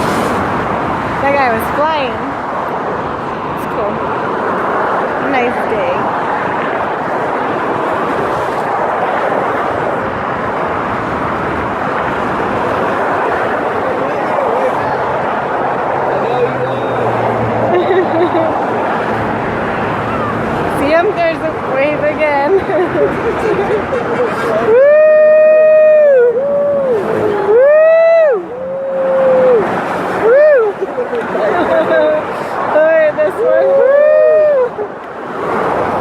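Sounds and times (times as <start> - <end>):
highway traffic rushing: 0.0 - 36.0
person whooping: 24.5 - 31.1, 33.4 - 34.9.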